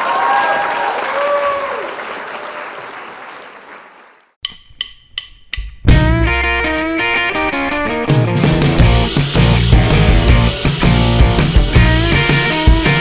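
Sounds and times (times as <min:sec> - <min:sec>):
crowd applause: 0:00.0 - 0:04.4.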